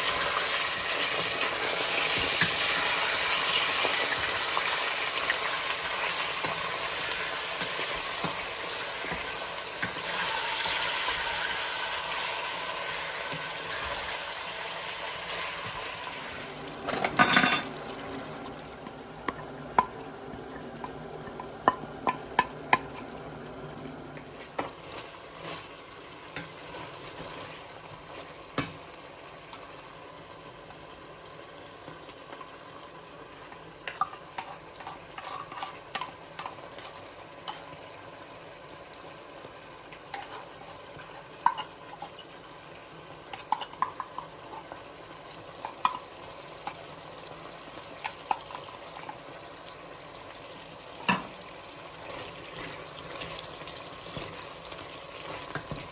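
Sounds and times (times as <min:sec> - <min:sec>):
frying sizzle: 0:00.0 - 0:55.9
metal spoon clinking in pot: 0:17.0 - 0:17.8.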